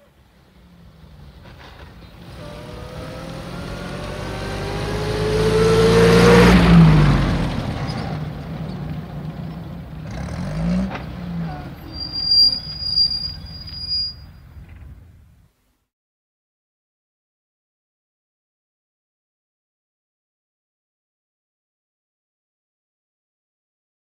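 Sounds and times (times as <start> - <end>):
car engine passing by: 0.1 - 12.7.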